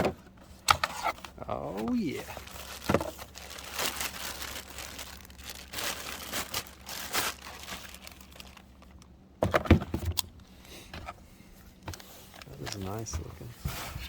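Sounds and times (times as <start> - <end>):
wrapping crinkling and tearing: 1.0 - 9.1.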